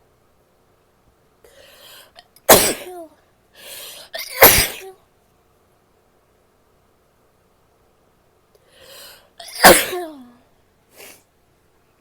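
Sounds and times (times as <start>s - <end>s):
woman sneezing: 2.5s - 3.1s, 4.2s - 5.0s, 9.4s - 10.4s
sharp breath in: 8.7s - 9.3s.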